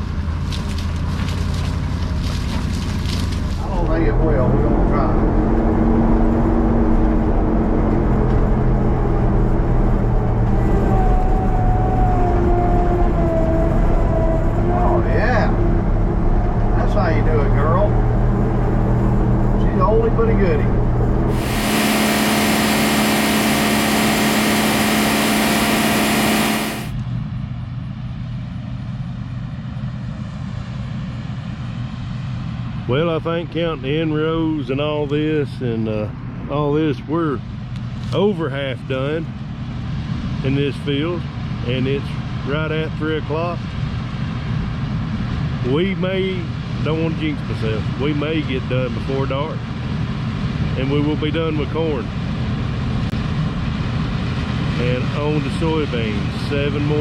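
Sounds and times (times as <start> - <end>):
farm vehicle engine running: 0.0 - 11.5, 19.8 - 27.0
faint whine: 21.3 - 26.9
farm machine engine running: 21.3 - 26.9
loud rushing hiss: 21.3 - 26.9.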